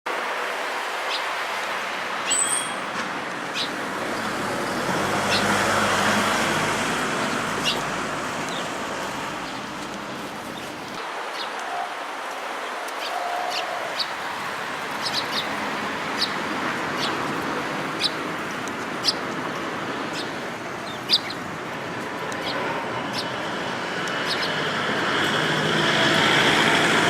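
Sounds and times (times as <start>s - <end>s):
sparrows chirping: 2.2s - 11.6s, 13.0s - 25.5s
vehicle passing: 2.8s - 11.0s, 14.1s - 27.0s.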